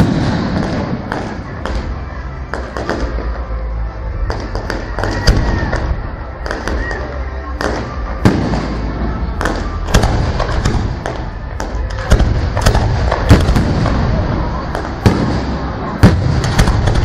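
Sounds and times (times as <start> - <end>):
fireworks bangs and crackles: 0.0 - 17.0.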